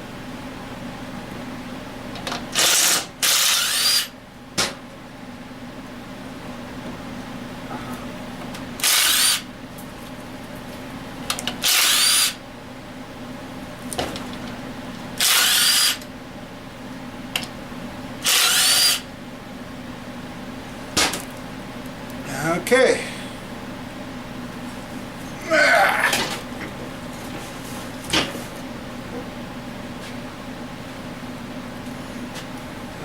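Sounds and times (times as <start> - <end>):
steady low hum: 0.0 - 33.0
power drill bursts: 2.6 - 4.1, 8.8 - 9.5, 11.6 - 12.4, 15.2 - 16.0, 18.2 - 19.1.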